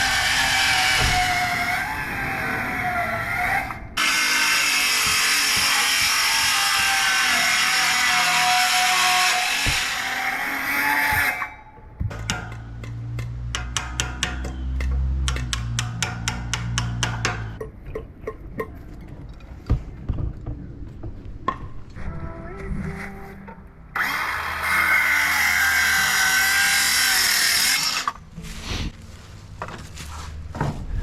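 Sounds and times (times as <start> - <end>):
power tool running: 4.0 - 11.4, 24.0 - 28.1.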